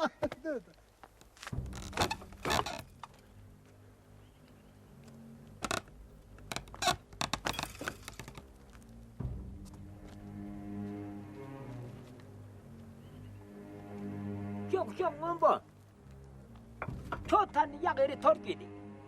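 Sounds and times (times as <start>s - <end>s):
low held orchestral notes: 8.6s - 19.0s.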